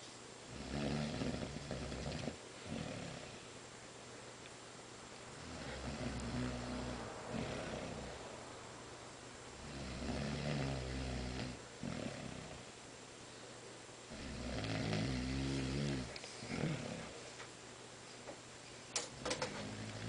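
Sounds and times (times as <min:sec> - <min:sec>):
fish grunting snores: 0:05.4 - 0:08.2, 0:14.1 - 0:17.2.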